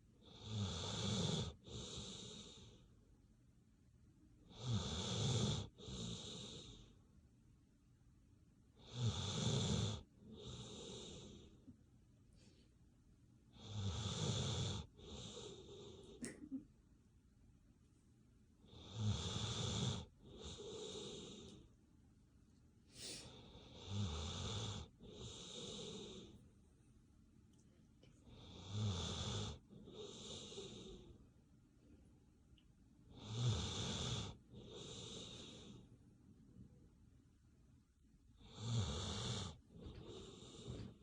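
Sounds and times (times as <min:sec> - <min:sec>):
dog snoring: 0:00.2 - 0:02.8, 0:04.4 - 0:06.9, 0:08.8 - 0:11.6, 0:13.5 - 0:16.3, 0:18.6 - 0:21.6, 0:23.0 - 0:26.4, 0:28.2 - 0:31.2, 0:33.1 - 0:35.9, 0:38.4 - 0:41.0.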